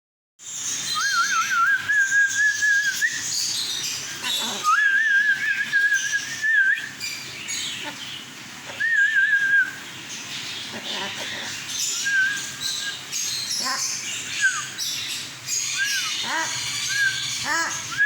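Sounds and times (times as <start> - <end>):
bird chirping: 0.4 - 18.0.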